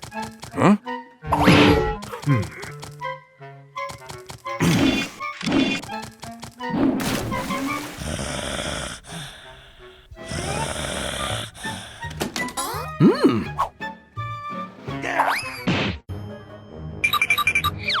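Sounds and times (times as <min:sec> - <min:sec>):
background music: 0:00.0 - 0:18.0
cartoon hissing: 0:07.4 - 0:12.9.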